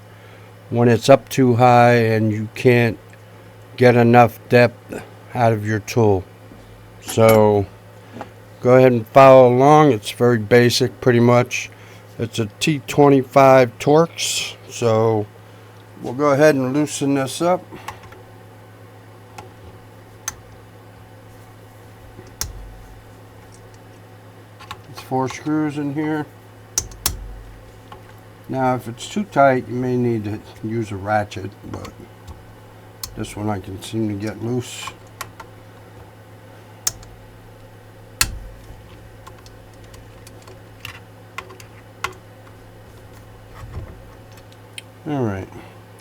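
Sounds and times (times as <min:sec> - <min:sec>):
steady low hum: 0:00.0 - 0:46.0
hand tool clicking on screws: 0:22.1 - 0:22.9, 0:26.8 - 0:28.1, 0:33.0 - 0:33.3, 0:36.9 - 0:37.2
screwdriver metal clicks: 0:22.2 - 0:22.9, 0:26.8 - 0:28.1, 0:33.0 - 0:33.4, 0:36.9 - 0:37.2, 0:38.2 - 0:42.2
dull thud: 0:26.8 - 0:27.8, 0:38.2 - 0:39.2.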